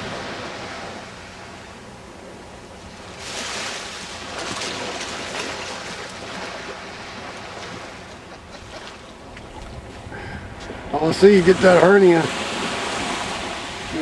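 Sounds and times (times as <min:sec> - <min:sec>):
wave crashing on beach: 0:00.0 - 0:01.6, 0:03.0 - 0:08.1, 0:09.8 - 0:14.0.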